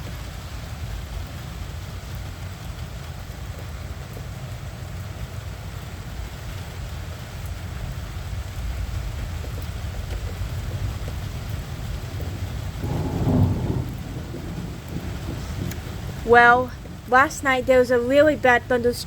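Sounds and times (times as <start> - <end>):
steady rain: 0.0 - 19.0
low thunder rumble: 9.9 - 19.0.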